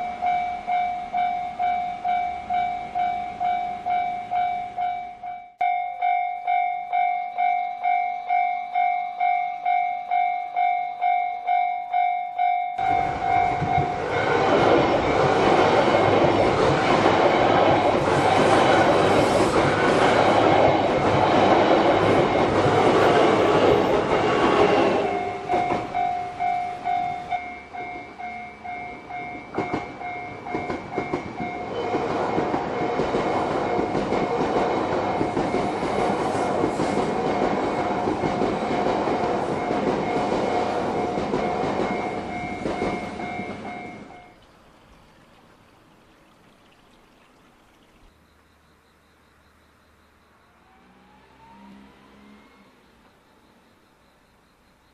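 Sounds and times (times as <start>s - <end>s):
level crossing warning bell: 0.0s - 14.3s, 22.2s - 36.2s, 37.0s - 44.4s
train rushing past: 12.8s - 44.3s, 50.4s - 53.9s.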